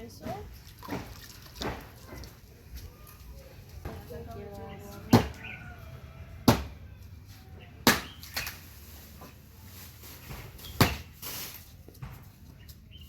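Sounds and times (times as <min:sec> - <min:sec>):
sharp knocks: 0:06.5 - 0:06.8.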